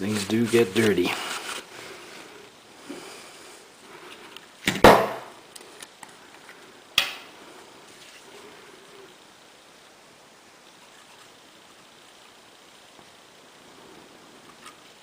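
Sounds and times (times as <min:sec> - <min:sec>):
pistol parts knocking down: 0:04.6 - 0:05.3.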